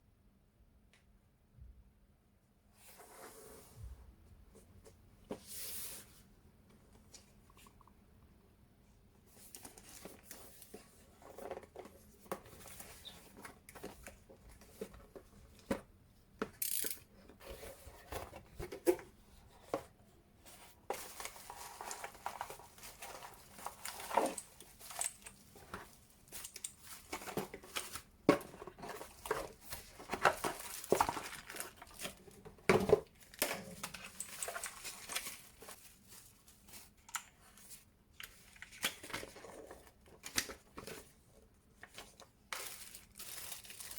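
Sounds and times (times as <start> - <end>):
packaging crinkling and tearing: 29.0 - 32.2, 42.6 - 43.9.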